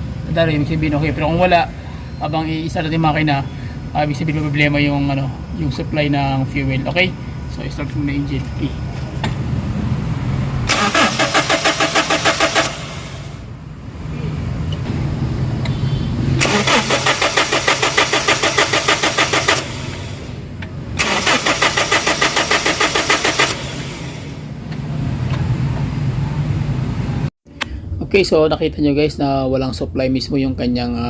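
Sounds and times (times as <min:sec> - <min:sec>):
car engine cranking: 0:10.6 - 0:13.5, 0:16.4 - 0:25.5.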